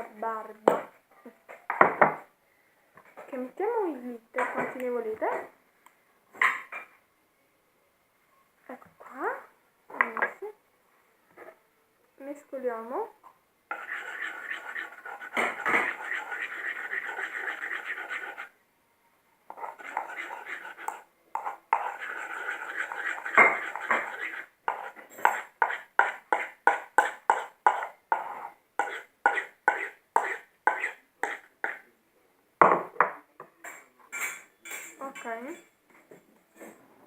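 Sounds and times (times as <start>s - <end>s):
spoon stirring and scraping glue: 13.7s - 18.6s, 19.5s - 31.8s.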